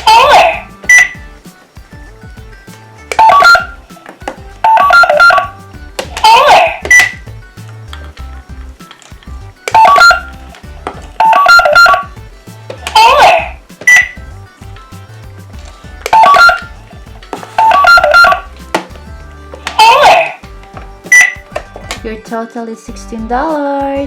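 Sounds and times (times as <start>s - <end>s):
toy cash register electronic sounds: 0.0s - 1.3s, 3.1s - 3.8s, 4.6s - 7.3s, 9.0s - 14.3s, 16.0s - 16.8s, 17.5s - 18.6s, 19.6s - 20.4s, 21.0s - 21.9s.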